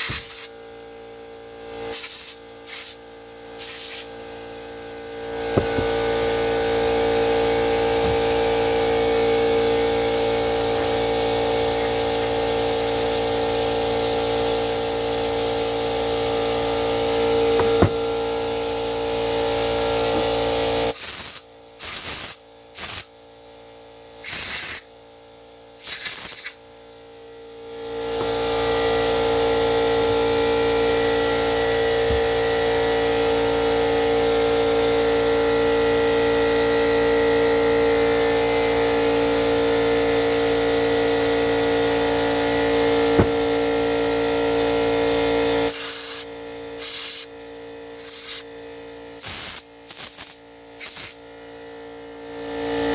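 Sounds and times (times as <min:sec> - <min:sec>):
compressed air blow gun hissing: 0:01.9 - 0:03.0, 0:03.6 - 0:04.1, 0:25.8 - 0:26.6, 0:45.7 - 0:47.3, 0:48.0 - 0:48.4, 0:49.2 - 0:51.2.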